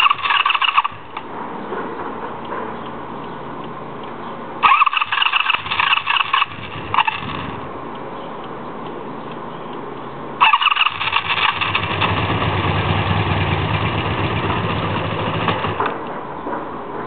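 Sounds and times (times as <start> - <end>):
motorcycle engine starting roughly: 0.0 - 1.2, 4.6 - 7.6, 10.4 - 16.0.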